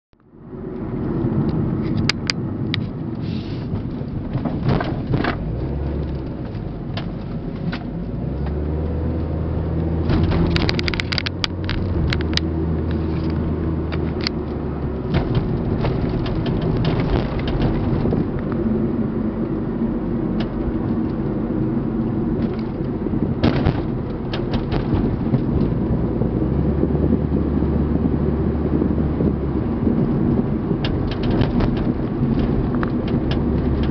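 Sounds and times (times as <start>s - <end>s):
low tyre rumble: 0.1s - 33.9s
sharp clicks and knocks: 1.4s - 3.0s, 3.7s - 8.6s, 9.9s - 18.6s, 22.4s - 25.9s, 30.8s - 33.9s.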